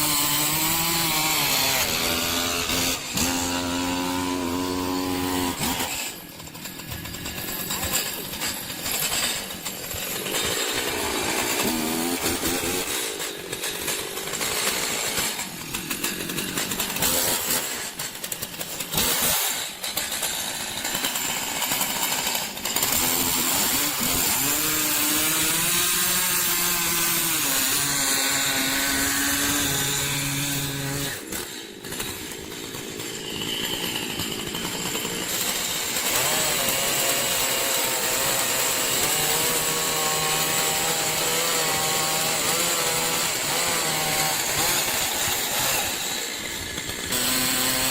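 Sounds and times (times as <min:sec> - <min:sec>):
chainsaw cutting wood: 0:00.0 - 0:47.9.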